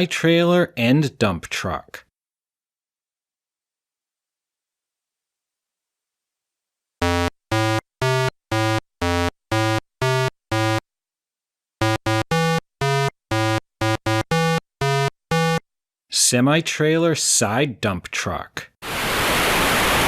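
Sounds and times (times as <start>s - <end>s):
synthesizer tune: 7.0s - 10.8s, 11.8s - 15.6s.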